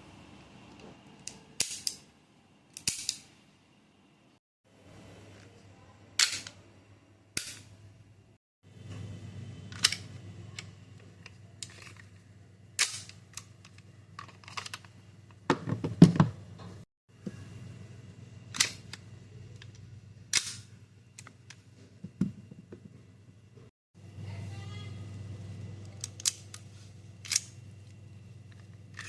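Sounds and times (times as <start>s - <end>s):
small handling clicks: 25.8s - 29.0s.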